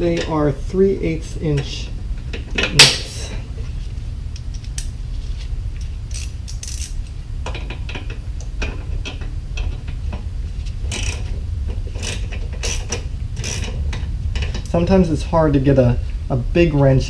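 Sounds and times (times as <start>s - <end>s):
steady low hum: 0.0s - 17.0s
socket ratchet clicking: 12.0s - 13.7s.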